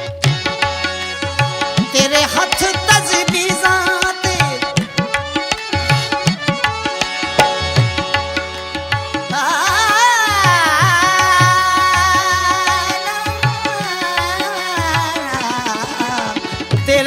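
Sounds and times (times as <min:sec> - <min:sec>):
held melodic tones: 0:00.4 - 0:10.1
hand drum beat: 0:04.3 - 0:08.4.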